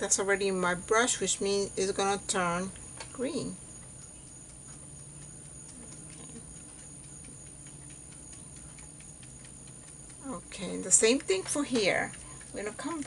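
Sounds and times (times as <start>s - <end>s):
electrical hum: 0.0s - 13.0s.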